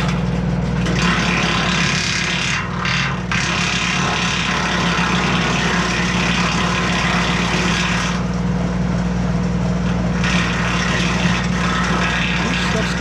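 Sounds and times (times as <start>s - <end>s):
wood chipper shredding branches: 0.0s - 13.0s
tractor engine humming: 11.2s - 13.0s.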